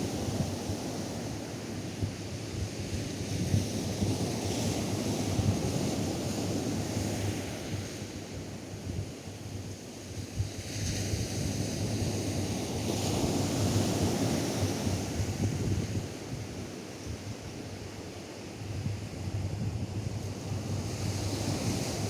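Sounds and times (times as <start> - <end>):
wind buffeting microphone: 13.1 - 17.9.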